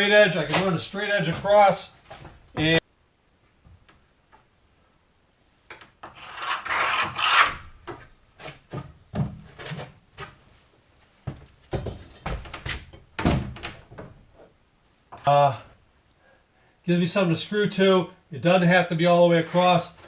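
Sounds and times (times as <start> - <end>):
wood scraping across wood: 0.1 - 2.8, 6.0 - 8.8.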